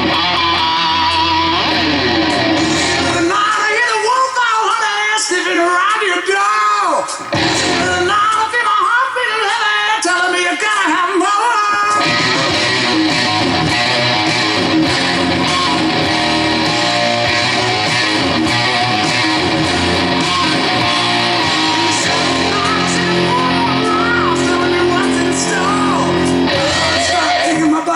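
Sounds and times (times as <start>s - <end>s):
bass guitar: 0.0s - 3.3s, 7.3s - 8.2s, 12.0s - 27.6s
electric guitar melody: 0.0s - 3.5s, 7.3s - 8.5s, 11.9s - 27.9s
drums: 0.0s - 27.9s.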